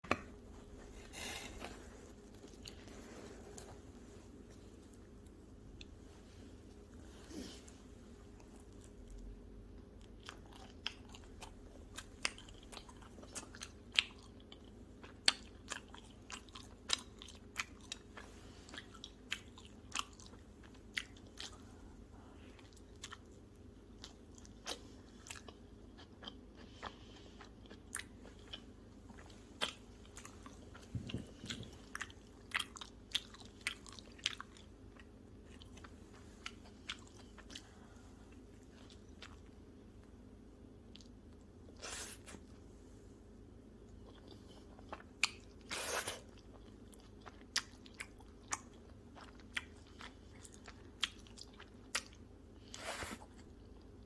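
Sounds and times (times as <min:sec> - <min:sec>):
faint low hum: 0:00.0 - 0:54.0
crunchy chewing: 0:22.5 - 0:39.6.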